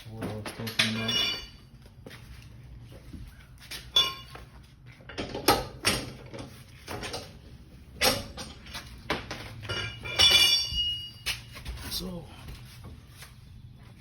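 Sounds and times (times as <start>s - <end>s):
low steady hum: 0.0s - 14.0s
metallic clanks of tools: 0.4s - 1.7s, 3.9s - 4.5s, 9.6s - 11.3s.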